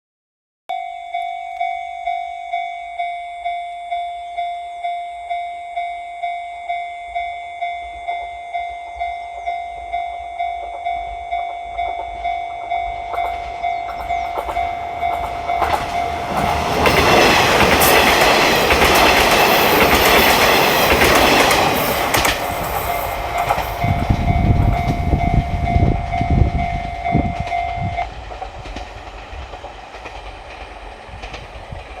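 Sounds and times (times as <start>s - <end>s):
level crossing signal clanging: 0.7s - 28.4s
train passing: 5.7s - 32.0s
train wheel clatter: 10.6s - 32.0s.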